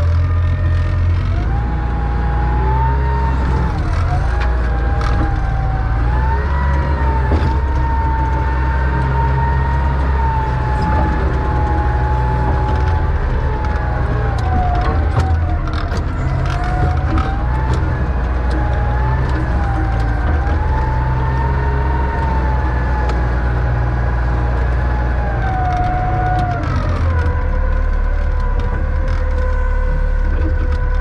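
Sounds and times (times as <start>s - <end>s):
diesel loader engine running: 0.0s - 31.0s.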